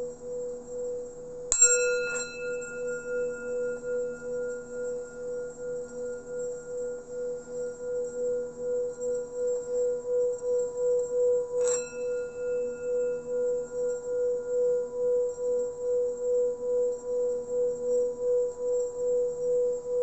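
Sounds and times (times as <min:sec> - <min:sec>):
singing bowl ringing: 0:00.0 - 0:20.0.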